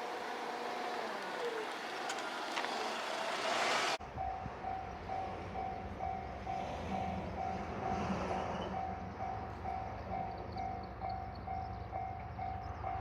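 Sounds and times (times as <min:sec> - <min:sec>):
diesel railcar running: 0:00.0 - 0:13.0
level crossing warning bell: 0:04.0 - 0:13.0.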